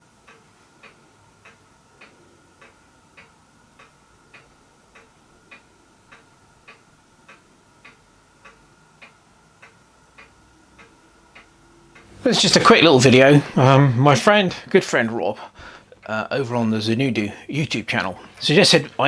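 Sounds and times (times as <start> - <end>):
faint steady ticking: 0.0 - 19.0
soft steady hum: 0.0 - 19.0.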